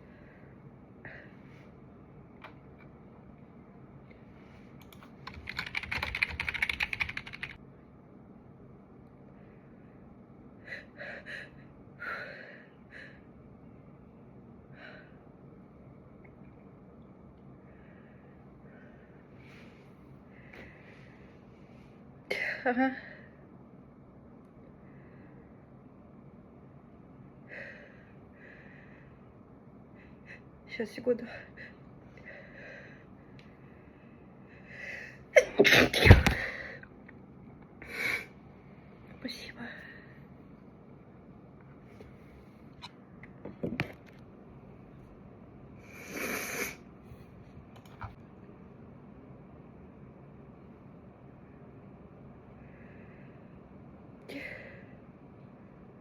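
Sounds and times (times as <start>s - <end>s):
woman sneezing: 35.4s - 36.4s.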